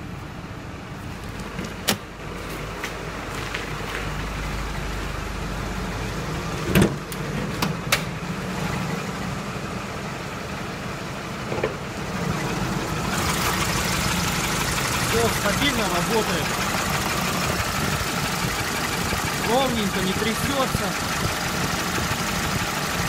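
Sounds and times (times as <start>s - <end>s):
diesel engine idling: 0.0s - 23.0s.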